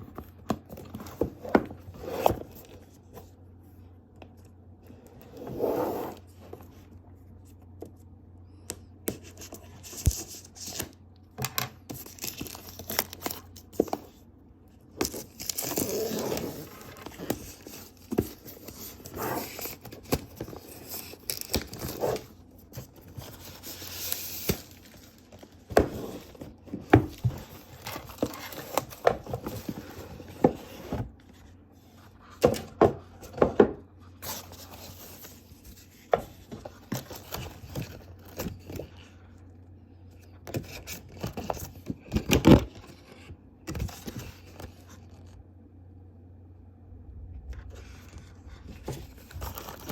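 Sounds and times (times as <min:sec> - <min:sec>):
paper and plastic rustling: 0:15.0 - 0:32.6.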